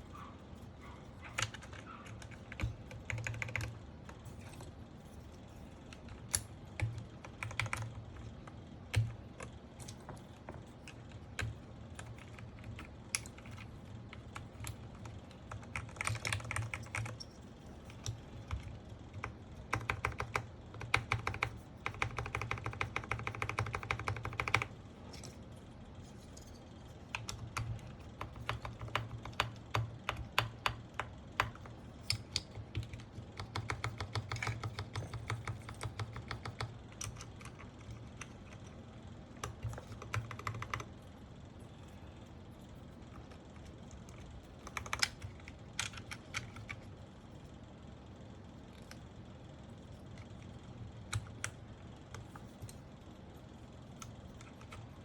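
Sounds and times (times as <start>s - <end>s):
mechanical keyboard typing: 0.8s - 4.8s, 5.6s - 25.4s, 26.9s - 41.1s, 42.9s - 47.0s, 50.0s - 52.8s, 53.9s - 55.0s.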